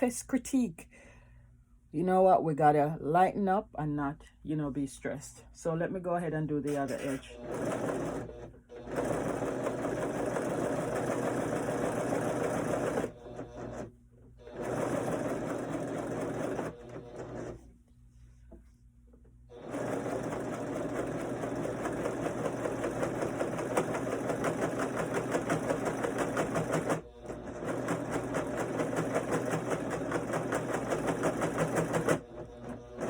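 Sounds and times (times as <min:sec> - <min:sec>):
serger sewing machine running: 0:06.7 - 0:17.6, 0:19.5 - 0:33.0.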